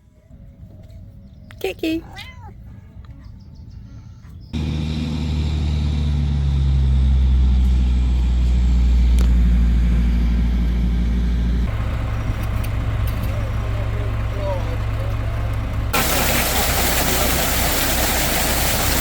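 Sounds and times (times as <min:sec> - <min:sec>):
machine humming: 0:04.6 - 0:12.3, 0:15.9 - 0:19.0.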